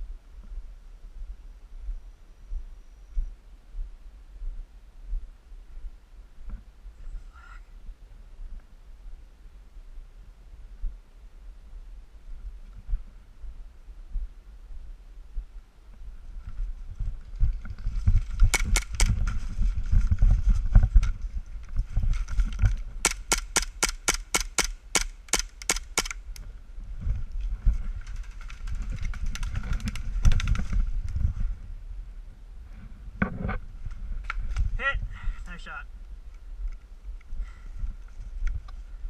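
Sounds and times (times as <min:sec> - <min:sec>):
airsoft gun shots: 0:23.0 - 0:26.1.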